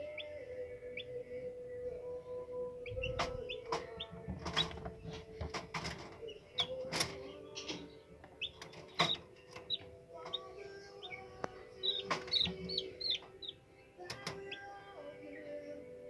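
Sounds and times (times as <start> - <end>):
chicks peeping: 0.0 - 16.0
sharp knocks and clicks: 2.9 - 10.5, 11.4 - 14.6.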